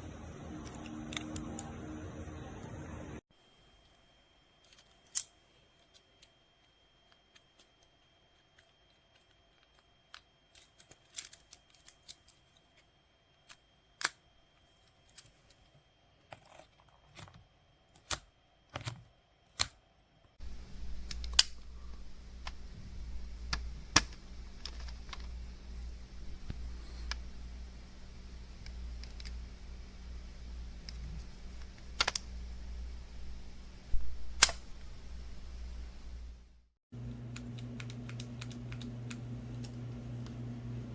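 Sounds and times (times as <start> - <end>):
steady low hum: 20.2 - 40.9.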